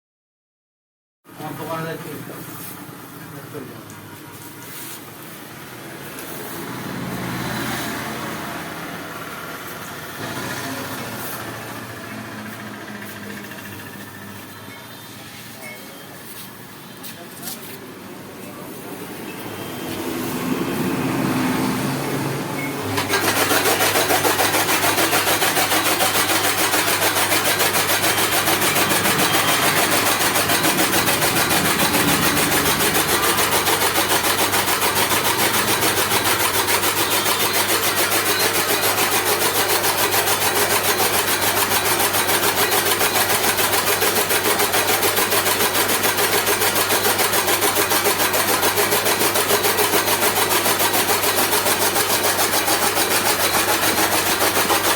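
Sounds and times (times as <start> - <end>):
chaff cutter chopping: 22.9 - 54.9.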